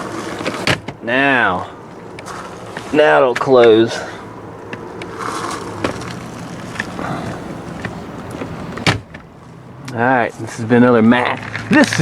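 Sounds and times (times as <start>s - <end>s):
glove box closing thump: 7.8s - 9.3s.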